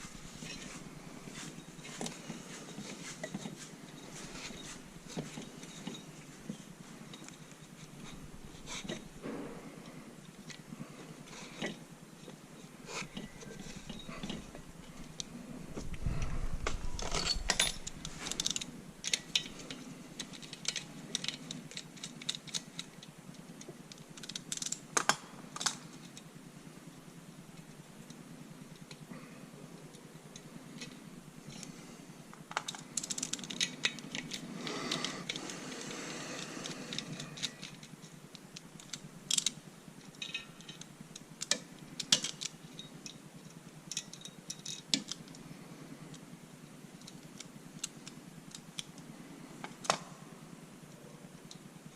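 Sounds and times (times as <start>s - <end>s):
metal parts and tools clinking: 0.0s - 9.2s, 11.2s - 15.3s, 16.4s - 23.1s, 32.4s - 45.2s.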